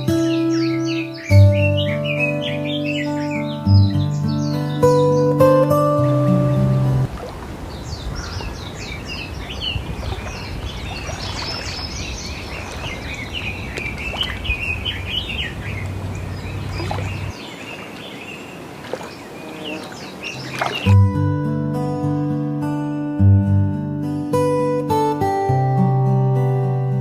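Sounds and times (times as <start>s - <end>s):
small birds chirping: 0.0s - 21.0s
low background rumble: 13.2s - 17.3s.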